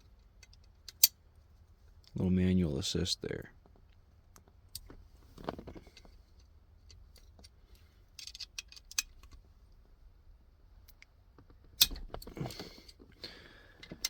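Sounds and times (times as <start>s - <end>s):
allen key clicks on bolts: 11.8s - 12.2s.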